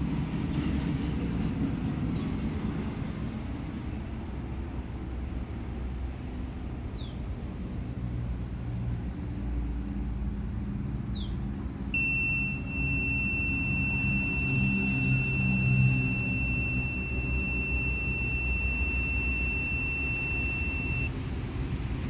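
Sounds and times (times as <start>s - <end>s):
high-pitched electronic beep: 12.0s - 21.1s.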